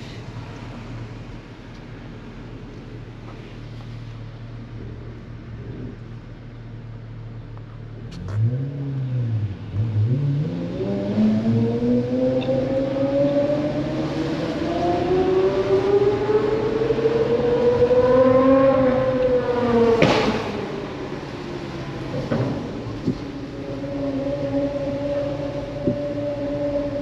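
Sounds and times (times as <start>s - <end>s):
sports car engine revving: 7.8s - 27.0s
engine accelerating: 7.9s - 27.0s
exhaust crack: 19.2s - 27.0s.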